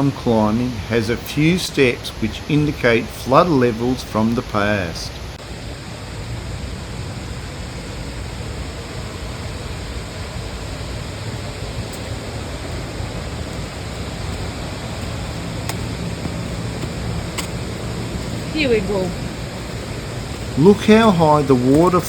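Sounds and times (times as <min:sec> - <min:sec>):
waterfall rushing: 0:11.6 - 0:22.0.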